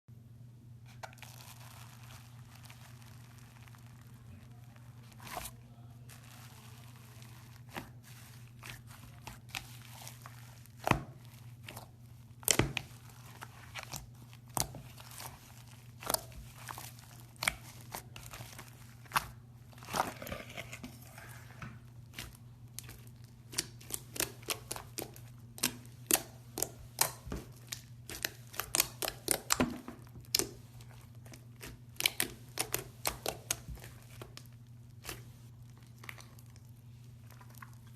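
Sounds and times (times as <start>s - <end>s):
steady low hum: 0.1s - 37.9s
slime popping and crackling: 0.9s - 5.5s, 22.0s - 37.8s.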